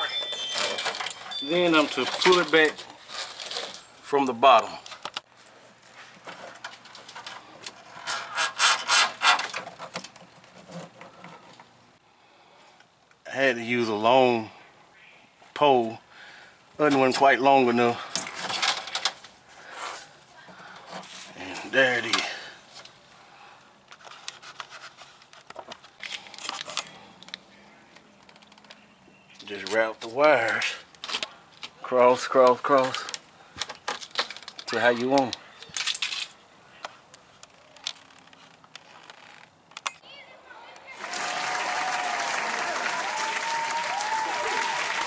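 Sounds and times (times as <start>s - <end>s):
wiring scraping and rustling: 0.0s - 4.2s, 4.8s - 11.8s, 18.1s - 23.0s, 23.9s - 28.8s, 29.4s - 39.9s
fish tape scraping: 7.7s - 11.6s, 23.9s - 27.0s.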